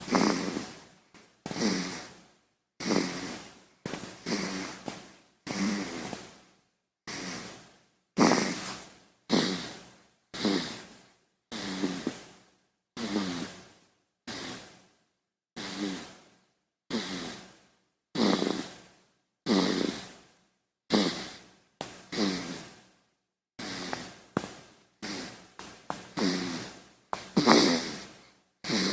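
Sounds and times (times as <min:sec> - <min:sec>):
child snoring: 0:00.0 - 0:00.9, 0:01.5 - 0:02.2, 0:02.8 - 0:04.9, 0:05.5 - 0:06.3, 0:07.1 - 0:07.6, 0:08.2 - 0:12.3, 0:13.0 - 0:13.7, 0:14.3 - 0:14.8, 0:15.6 - 0:16.2, 0:16.9 - 0:17.5, 0:18.2 - 0:18.8, 0:19.4 - 0:20.2, 0:20.9 - 0:21.5, 0:22.1 - 0:22.8, 0:23.6 - 0:24.2, 0:25.0 - 0:25.5, 0:26.1 - 0:28.9.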